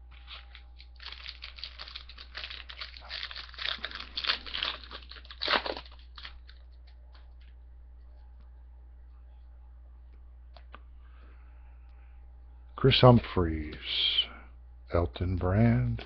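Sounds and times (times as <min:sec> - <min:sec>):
foil wrapper torn and crinkled: 0:00.1 - 0:07.0.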